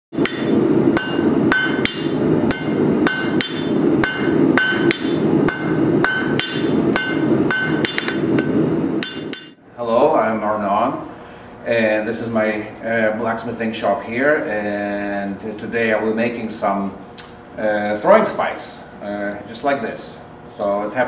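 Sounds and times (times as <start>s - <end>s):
low rushing noise: 0.1s - 9.6s
hammer striking steel on anvil: 0.2s - 9.6s.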